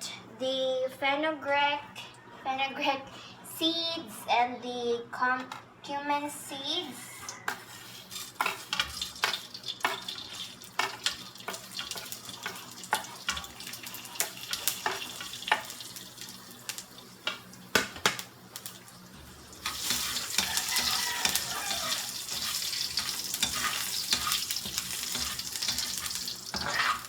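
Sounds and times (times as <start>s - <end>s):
steady sizzle: 6.8s - 27.0s
seeds crackling in hot oil: 7.5s - 27.0s.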